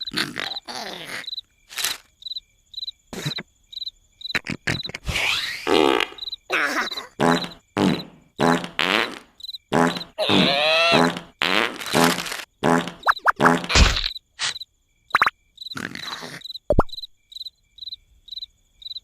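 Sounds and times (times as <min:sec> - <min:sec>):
cartoon snoring: 0:00.0 - 0:01.3, 0:06.8 - 0:13.8, 0:15.8 - 0:16.5
crickets chirping: 0:00.0 - 0:19.0.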